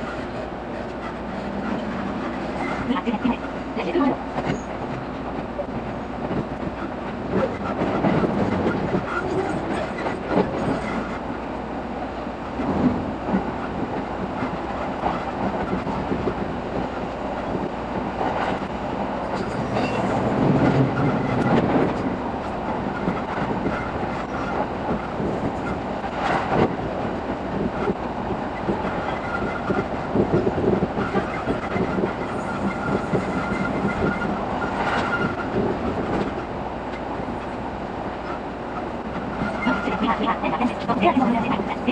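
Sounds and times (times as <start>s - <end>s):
train rumble inside passenger car: 0.0s - 41.9s.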